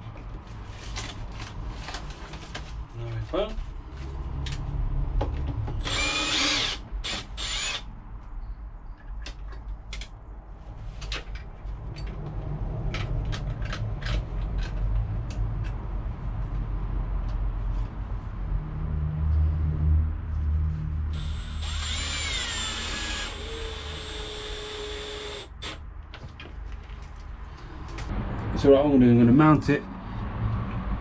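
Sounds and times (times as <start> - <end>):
power drill whine: 5.8 - 7.9, 21.2 - 25.8.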